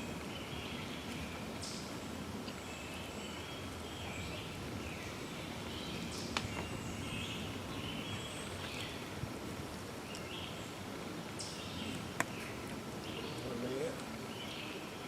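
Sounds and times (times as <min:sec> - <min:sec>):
birds calling: 0:00.0 - 0:09.2, 0:10.0 - 0:15.0
outdoor background hiss: 0:00.0 - 0:15.0.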